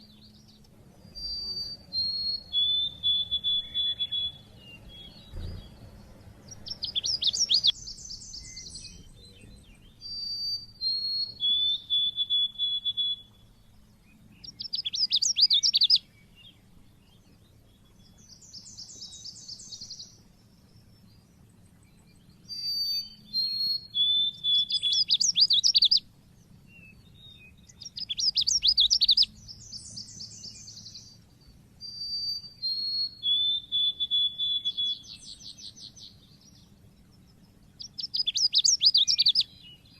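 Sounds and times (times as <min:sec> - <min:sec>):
bird whistled song and trills: 0:00.0 - 0:39.9.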